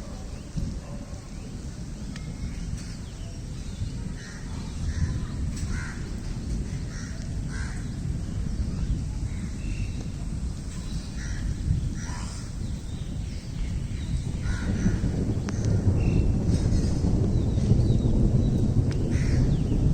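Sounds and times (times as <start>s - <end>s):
birds calling: 0.0s - 19.9s
heavy rain: 0.0s - 19.9s.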